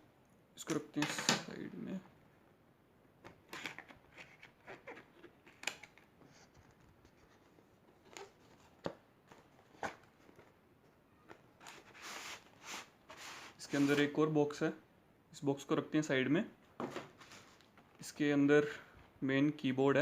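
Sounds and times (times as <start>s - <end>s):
cardboard box sliding: 11.8s - 14.1s.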